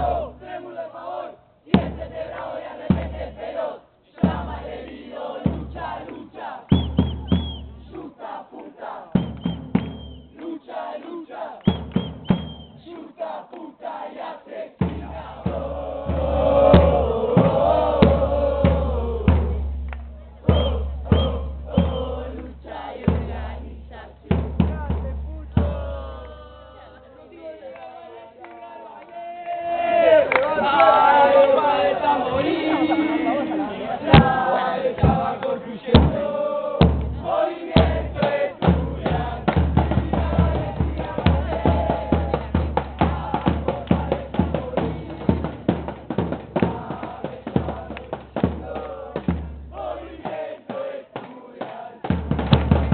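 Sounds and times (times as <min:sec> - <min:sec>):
choir-like chanting: 0:00.0 - 0:52.9
deep drum beat: 0:01.8 - 0:03.4, 0:04.2 - 0:06.0, 0:14.8 - 0:26.7, 0:34.1 - 0:50.4, 0:52.0 - 0:52.9.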